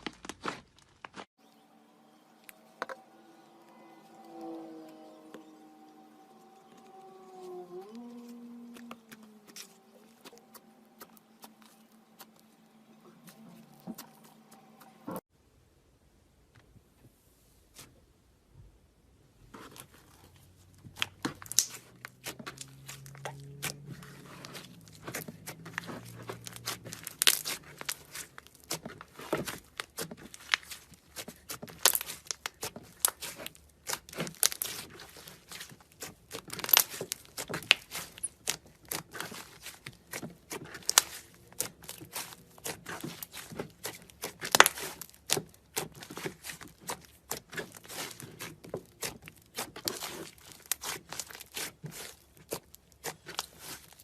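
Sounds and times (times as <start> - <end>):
slime squishing with sticky pops: 19.6 - 54.0.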